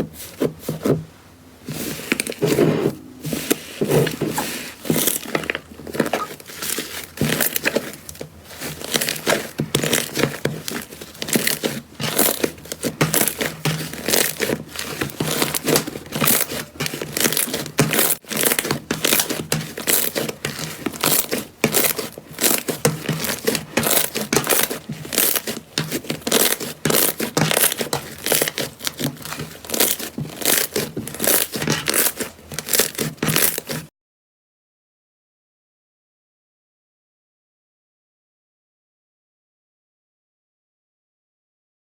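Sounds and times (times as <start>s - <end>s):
slime crackling and popping: 8.8s - 33.8s.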